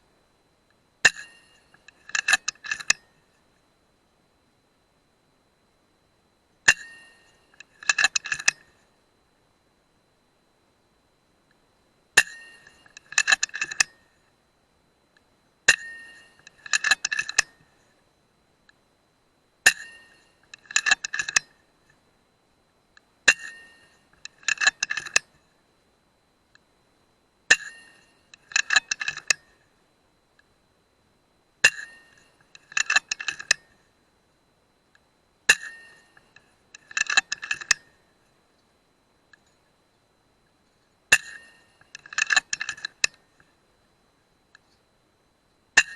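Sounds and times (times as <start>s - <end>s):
air rifle shot with metallic ring: 12.2s - 12.8s
rifle lever metallic clicks: 36.8s - 37.8s, 41.9s - 43.2s.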